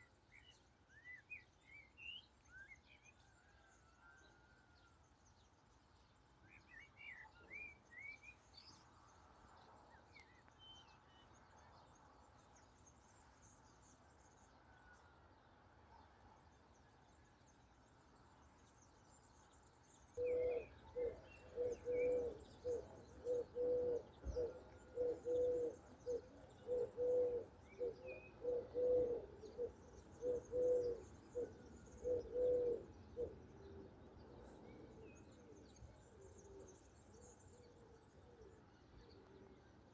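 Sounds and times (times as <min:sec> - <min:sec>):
songbird chirps: 0:00.0 - 0:39.9
dove cooing: 0:20.2 - 0:34.0.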